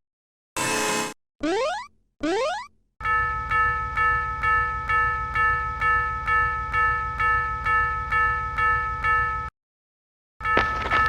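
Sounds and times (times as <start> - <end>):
cartoon upward pitch sweep: 1.4 - 2.7
railroad crossing alarm bell: 3.0 - 9.5, 10.4 - 11.0.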